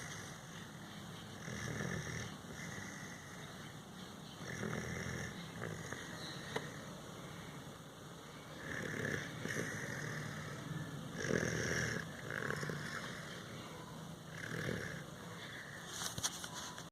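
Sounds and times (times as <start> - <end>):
person snoring: 1.4 - 3.4, 4.4 - 6.1, 8.6 - 13.5, 14.3 - 15.8.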